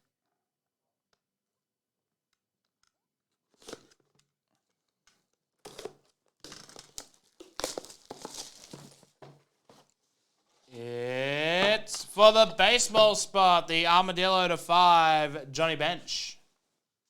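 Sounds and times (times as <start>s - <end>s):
plastic wrapping torn and crinkled: 5.7s - 9.1s.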